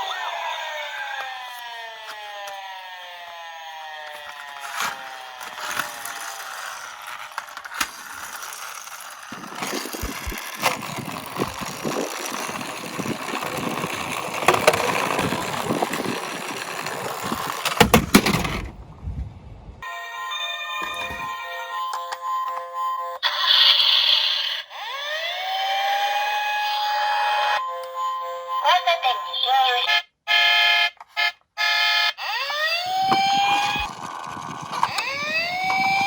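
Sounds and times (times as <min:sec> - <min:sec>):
toy cars rattling on a track: 0:02.0 - 0:18.7, 0:32.2 - 0:36.0.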